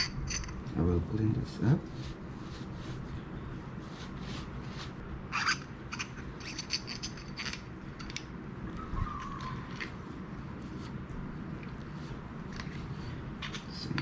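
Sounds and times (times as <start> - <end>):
scratchy rubbing strokes: 1.8 - 7.6.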